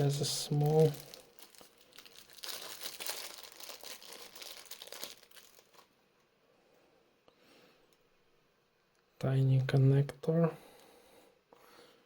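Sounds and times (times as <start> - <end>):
packaging crinkling and rustling: 0.0 - 6.0.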